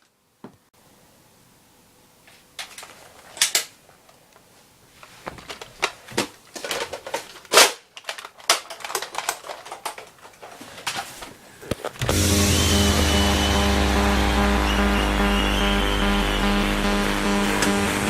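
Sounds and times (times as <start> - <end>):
toy blaster plastic clacks: 6.6 - 10.4.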